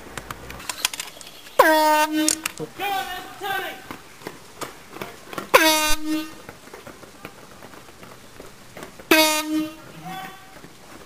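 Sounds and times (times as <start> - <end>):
air horn blasts: 1.6 - 2.6, 5.5 - 6.4, 9.1 - 10.6.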